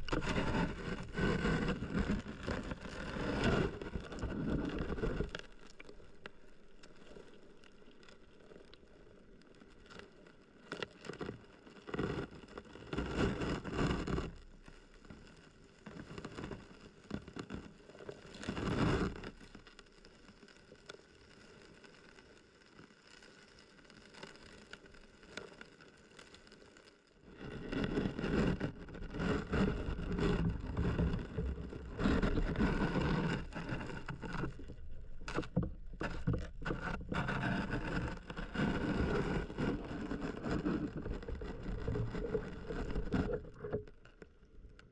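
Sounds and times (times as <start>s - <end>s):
muffled underwater stream rushing: 29.0s - 44.8s.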